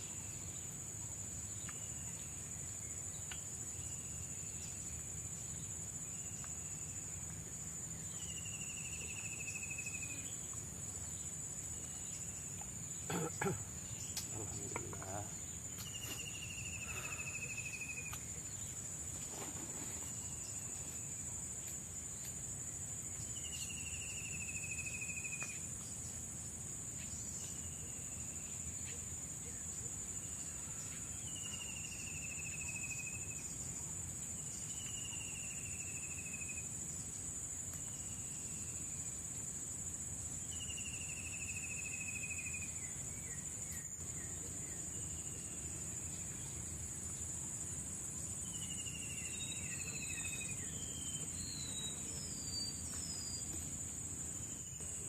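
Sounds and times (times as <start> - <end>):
insects shrilling: 11.6 - 21.3.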